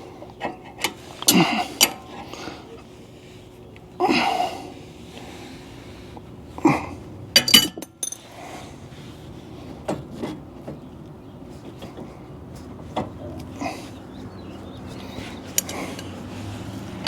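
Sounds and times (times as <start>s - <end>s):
metal tools clinking on steel: 7.4s - 8.3s, 15.0s - 16.2s.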